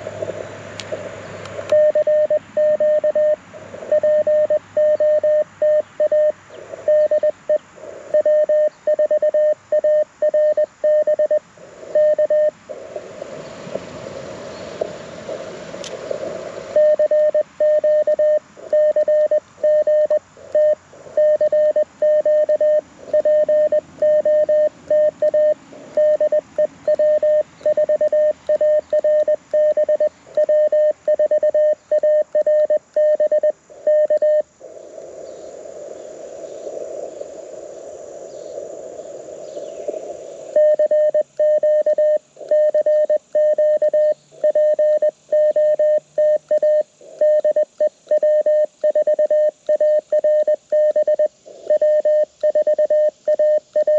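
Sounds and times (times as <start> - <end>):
radio band hiss: 0.0 - 45.3, 46.1 - 49.6, 51.2 - 53.9
morse code beeps: 1.7 - 12.6, 16.7 - 34.4, 40.6 - 53.9.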